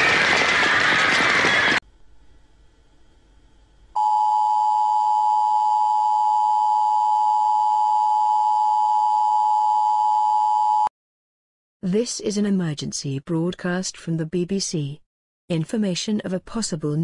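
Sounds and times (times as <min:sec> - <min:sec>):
faint hum: 0:01.8 - 0:10.9.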